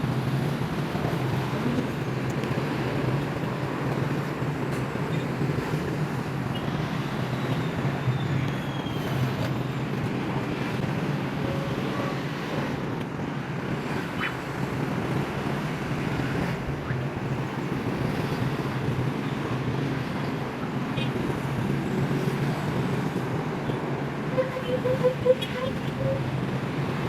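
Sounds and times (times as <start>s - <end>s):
city traffic rumble: 0.0s - 27.0s.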